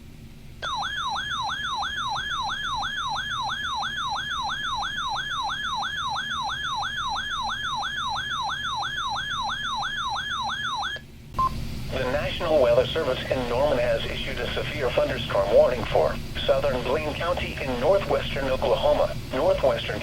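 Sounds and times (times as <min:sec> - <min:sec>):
electronic warbling alarm siren: 0:00.6 - 0:11.0.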